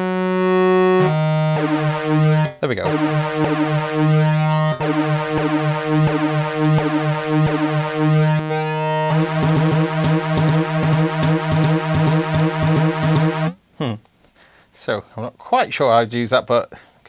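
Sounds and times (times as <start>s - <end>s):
synthesizer chord with flanger: 0.0s - 13.6s.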